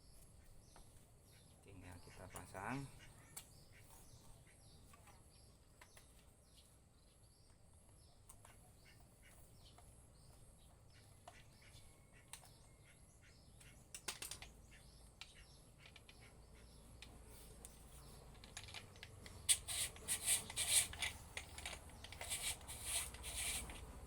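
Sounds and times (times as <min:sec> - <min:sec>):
angle grinder parts clicking: 0:18.2 - 0:24.0.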